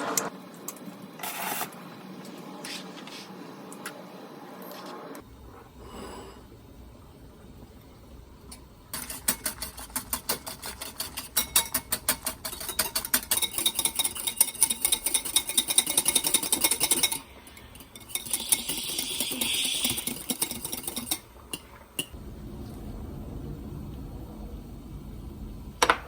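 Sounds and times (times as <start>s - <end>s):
whisk beating in a bowl: 8.9s - 22.1s.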